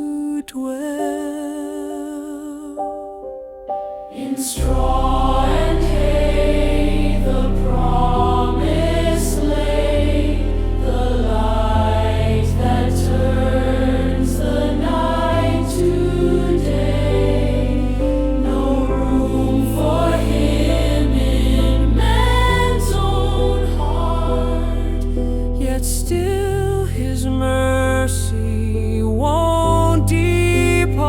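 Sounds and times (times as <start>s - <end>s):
choir singing worship song: 4.0s - 26.3s
deep bass accompaniment: 4.6s - 31.0s.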